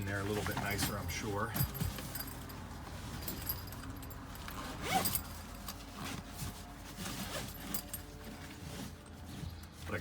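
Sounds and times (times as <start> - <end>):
metal tools clinking: 0.0 - 5.8
cloth rustling and scraping: 0.0 - 10.0.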